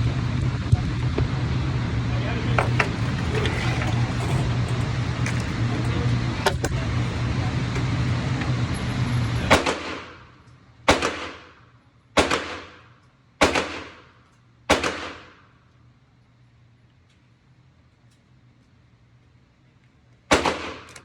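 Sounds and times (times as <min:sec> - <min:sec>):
rifle shots with echo: 0:10.9 - 0:11.5, 0:12.2 - 0:12.8, 0:13.4 - 0:14.1, 0:14.7 - 0:15.4, 0:20.3 - 0:20.9.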